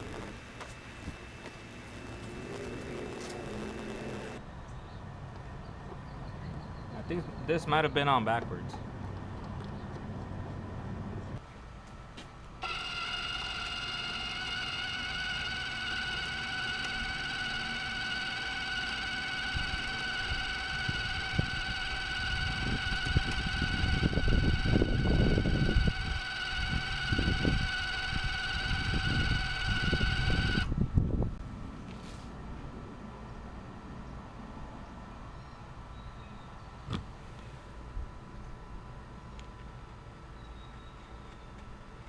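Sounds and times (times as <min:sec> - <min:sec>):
wire-feed motor whining: 0:00.0 - 0:04.4, 0:12.6 - 0:30.7.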